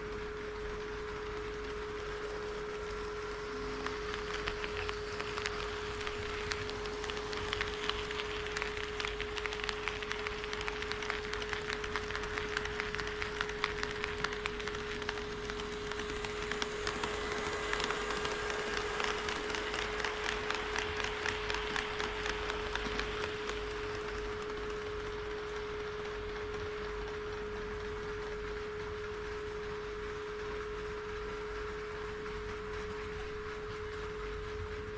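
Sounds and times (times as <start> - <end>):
model train wheels clicking: 0.6 - 34.9
model train motor whine: 1.7 - 25.3.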